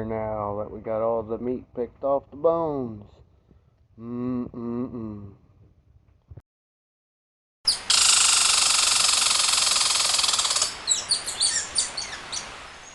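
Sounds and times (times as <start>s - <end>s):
bird chirps: 7.7s - 12.9s
rapidly pulsing high buzz: 7.8s - 10.9s.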